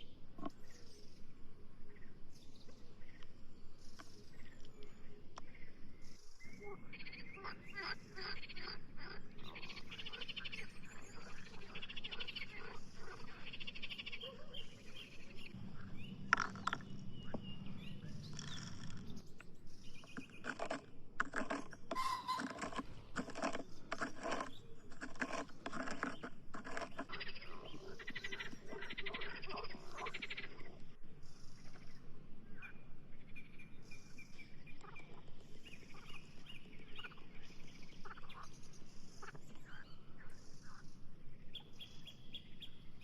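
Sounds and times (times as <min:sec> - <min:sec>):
frogs trilling chorus: 0:06.5 - 0:19.2, 0:27.0 - 0:30.8
low hum: 0:15.2 - 0:21.3.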